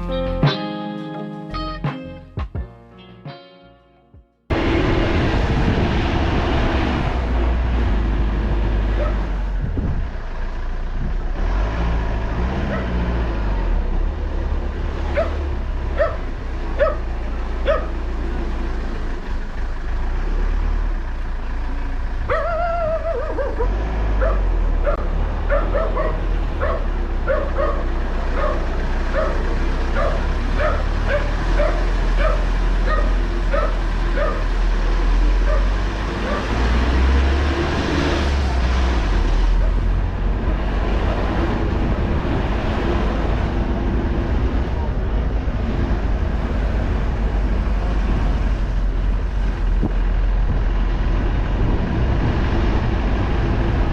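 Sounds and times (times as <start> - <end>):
low vehicle rumble: 4.5 - 53.9
dog yipping and barking: 8.9 - 9.3, 12.7 - 13.0, 15.1 - 15.4, 16.0 - 18.0, 22.3 - 34.5, 35.4 - 36.6
dog whining: 22.3 - 27.8.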